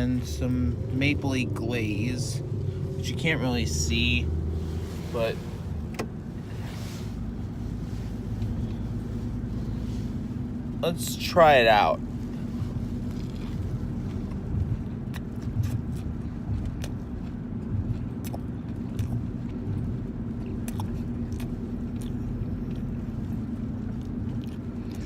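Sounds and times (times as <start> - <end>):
low hum: 0.0 - 25.0
person chewing: 12.4 - 25.0.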